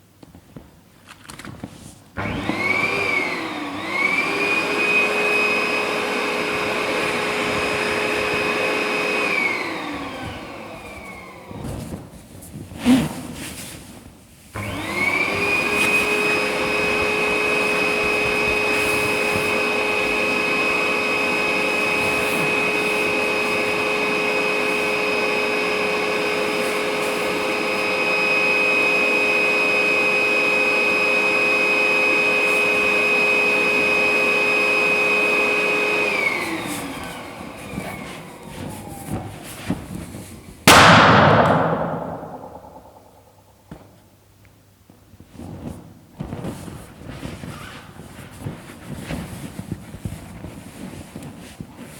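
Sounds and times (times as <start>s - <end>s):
balloon bang: 40.7s - 43.2s.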